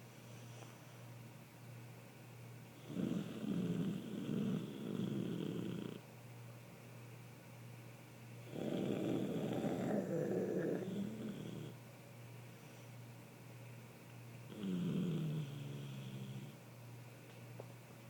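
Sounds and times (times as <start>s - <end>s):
person snoring: 2.8s - 6.0s, 8.5s - 11.8s, 14.5s - 16.6s.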